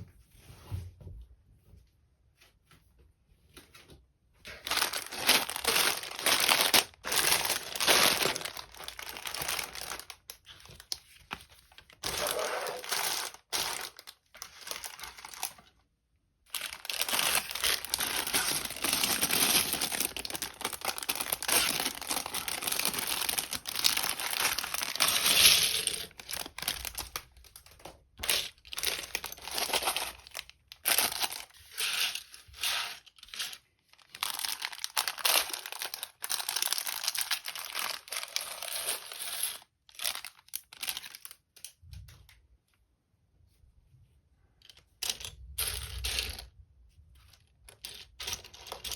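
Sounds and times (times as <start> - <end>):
plastic bags crinkling and tearing: 4.4 - 15.8, 16.5 - 41.6, 47.6 - 48.9.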